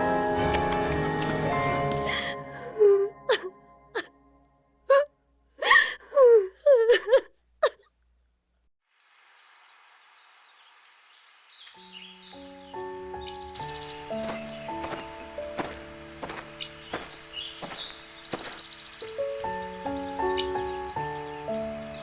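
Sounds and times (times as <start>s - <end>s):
solo piano music: 0.0s - 2.6s
person gasping and whimpering: 2.0s - 4.1s, 4.9s - 7.8s.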